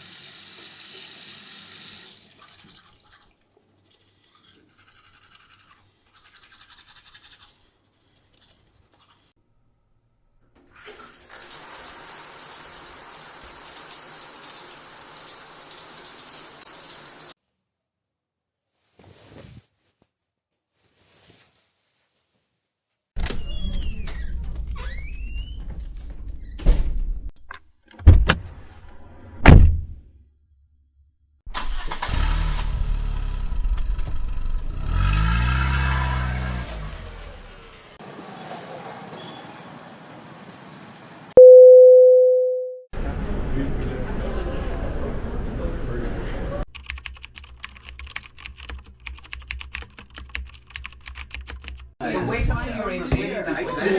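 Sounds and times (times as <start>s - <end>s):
tap water running: 0.0s - 3.4s, 10.7s - 17.4s.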